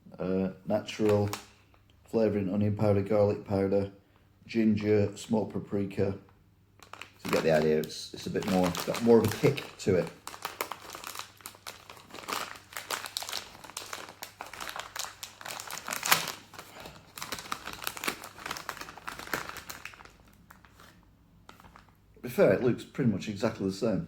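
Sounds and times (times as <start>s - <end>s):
plastic snack packet crinkling: 0.9s - 1.8s, 6.8s - 22.0s.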